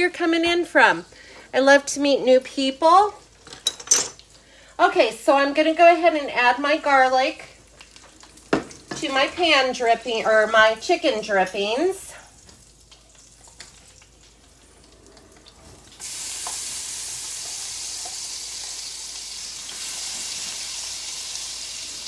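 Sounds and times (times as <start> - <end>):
garlic sizzling in a skillet: 15.4 - 22.0.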